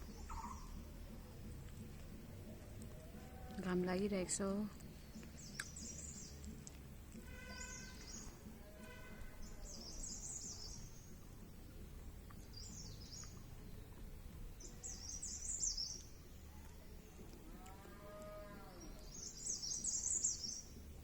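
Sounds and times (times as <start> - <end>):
songbird warbling: 0.0 - 0.8, 7.1 - 8.4, 9.0 - 11.4, 14.6 - 16.2
bird calls: 0.0 - 20.9
low background noise: 0.0 - 21.0.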